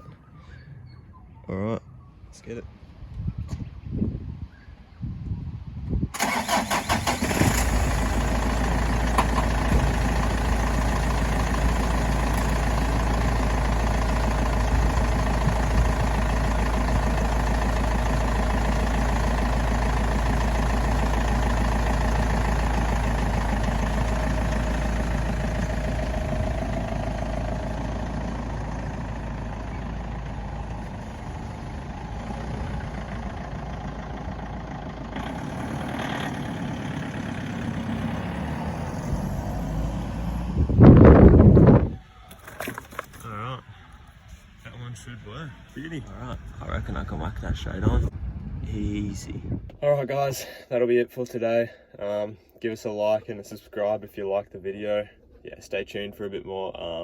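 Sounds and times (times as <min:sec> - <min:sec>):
diesel engine cranking and running: 0:06.1 - 0:48.6.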